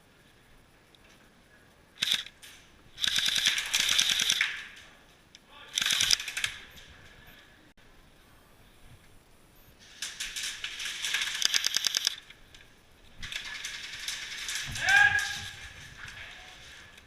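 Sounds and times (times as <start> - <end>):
airsoft gun full-auto bursts: 2.0 - 2.3, 3.0 - 4.6, 5.7 - 6.6, 10.2 - 12.2.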